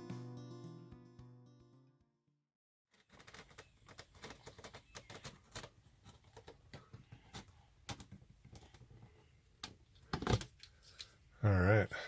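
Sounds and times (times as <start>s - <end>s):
panel material cracking: 2.9s - 6.8s.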